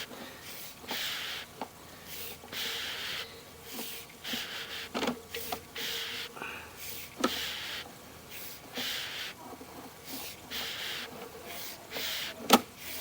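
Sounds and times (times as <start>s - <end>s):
person breathing: 0.0s - 3.5s, 5.8s - 7.8s
faint steady hum: 0.0s - 13.0s.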